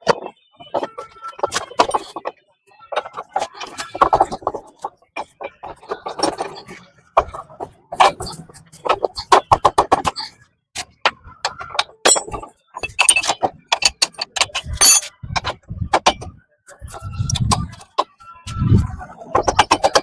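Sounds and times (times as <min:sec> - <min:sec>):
metal parts clinking and knocking: 0:11.4 - 0:16.2.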